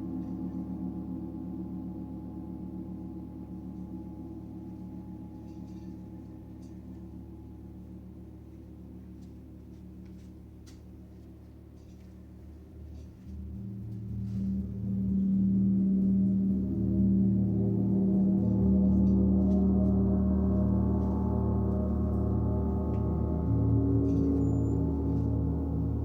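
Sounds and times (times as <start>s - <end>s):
gong ringing: 13.0s - 26.0s.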